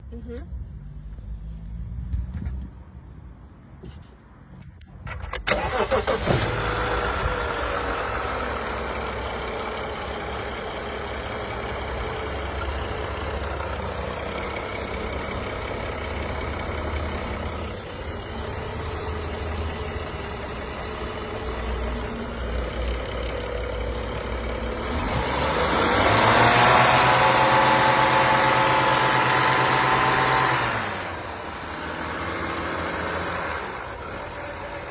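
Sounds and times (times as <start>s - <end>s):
car engine starting and idling: 4.6s - 34.9s
engine revving: 5.5s - 34.9s.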